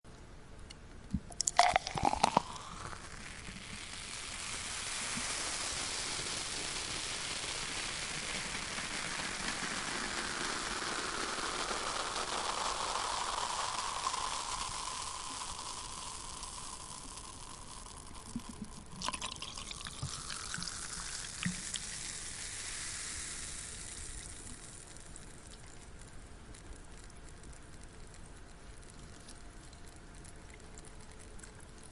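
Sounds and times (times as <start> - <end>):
cola pouring into a glass: 1.2 - 8.0, 12.2 - 26.0
fizzing hiss: 1.4 - 26.1.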